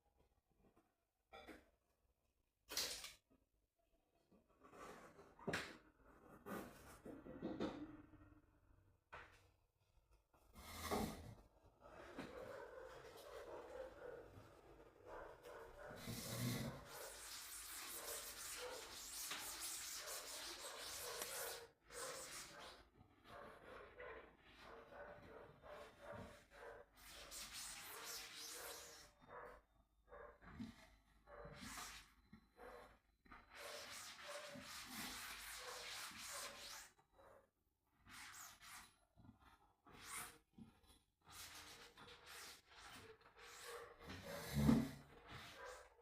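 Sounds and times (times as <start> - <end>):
hand scrubbing a surface: 12.3 - 29.1, 31.5 - 37.0, 38.0 - 40.4, 41.2 - 46.0.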